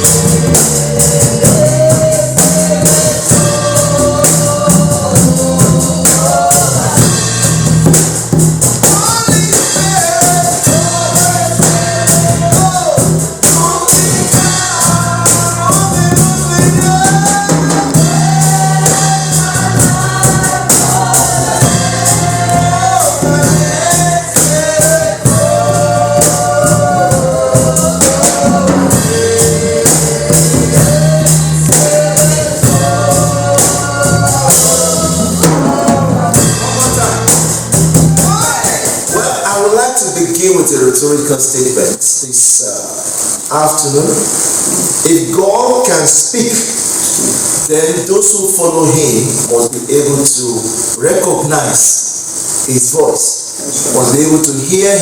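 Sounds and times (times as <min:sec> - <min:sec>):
singers over a band: 0:00.0 - 0:07.6, 0:08.8 - 0:40.2
bass line: 0:00.0 - 0:41.2.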